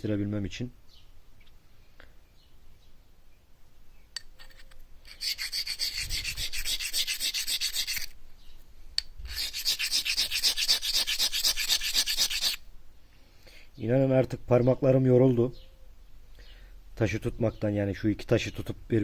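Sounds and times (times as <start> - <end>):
stone scraping on sharpening stone: 4.2 - 8.2, 9.2 - 12.6.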